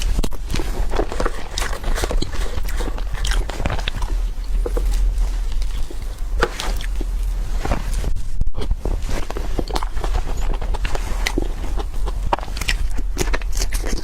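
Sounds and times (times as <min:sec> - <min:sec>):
low hum: 0:00.0 - 0:14.0
person biting and chewing food: 0:00.0 - 0:14.0.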